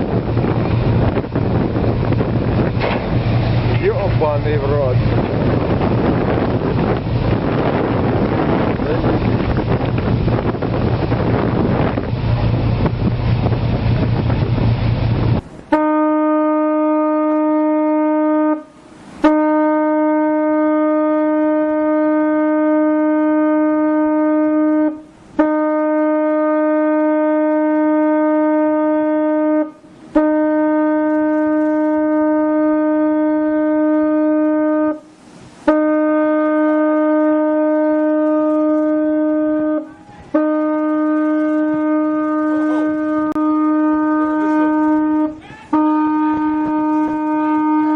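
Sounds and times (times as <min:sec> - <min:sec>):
wind on microphone: 0:00.0 - 0:15.7, 0:16.6 - 0:47.9
sea noise: 0:00.0 - 0:47.9
ship's horn long blasts: 0:00.0 - 0:47.9.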